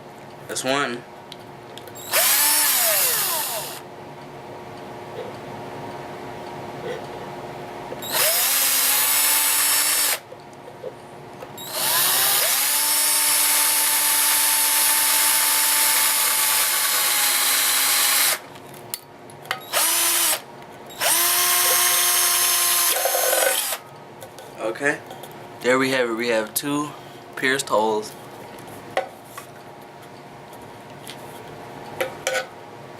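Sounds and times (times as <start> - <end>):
electric drill whining through metal: 2.0 - 3.8, 8.0 - 10.2, 11.6 - 18.4, 19.6 - 23.8.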